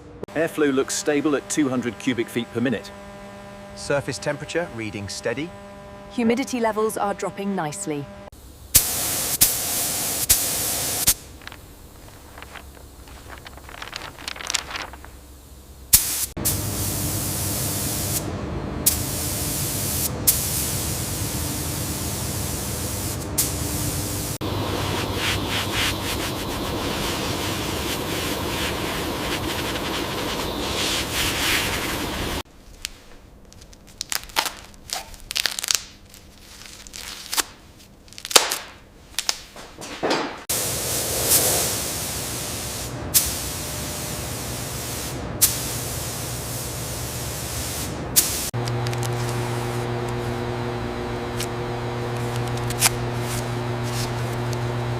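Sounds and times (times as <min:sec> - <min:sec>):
compressed-air tool spraying: 0:08.7 - 0:13.3, 0:15.0 - 0:18.3, 0:18.9 - 0:32.4, 0:40.5 - 0:50.4, 0:51.3 - 0:54.9.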